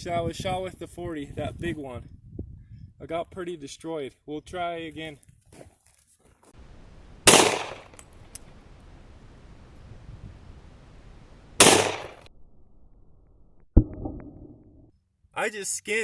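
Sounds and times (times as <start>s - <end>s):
pistol shots: 7.2s - 8.0s, 11.6s - 12.3s.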